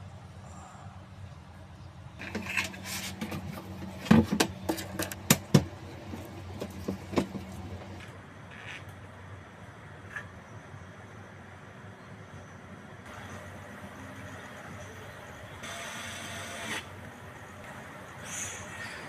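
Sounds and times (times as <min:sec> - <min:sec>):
steady low hum: 0:00.0 - 0:11.7.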